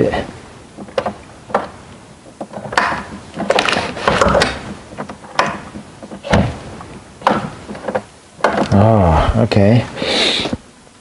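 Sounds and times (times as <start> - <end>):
wooden door rattling: 0.7 - 8.8.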